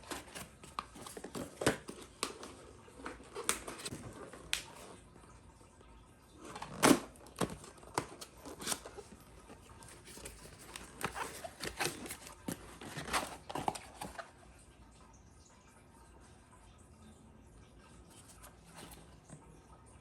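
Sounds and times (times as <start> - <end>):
packaging crinkling and tearing: 0.0 - 5.0, 6.4 - 14.3.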